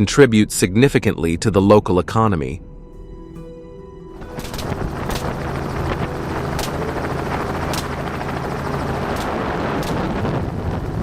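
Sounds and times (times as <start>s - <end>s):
helicopter engine and rotor drone: 4.2s - 11.0s
sharp cracks: 4.3s - 10.5s.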